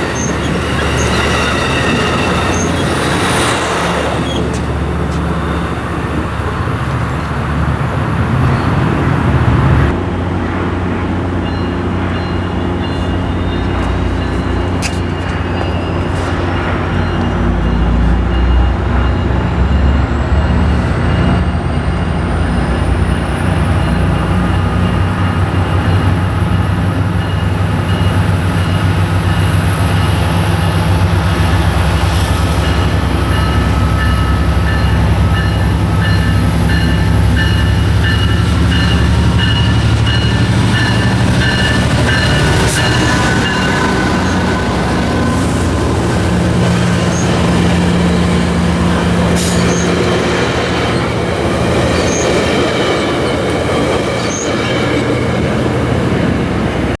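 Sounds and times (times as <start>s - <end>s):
wheel squeal: 0.0s - 6.4s, 49.4s - 50.2s, 54.1s - 55.0s
locomotive engine running: 0.0s - 57.0s.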